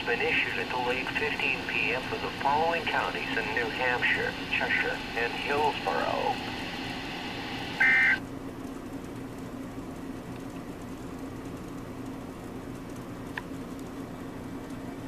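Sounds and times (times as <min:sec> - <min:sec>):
low hum and faint hiss: 0:00.0 - 0:15.0
two-tone data screech: 0:07.7 - 0:08.2.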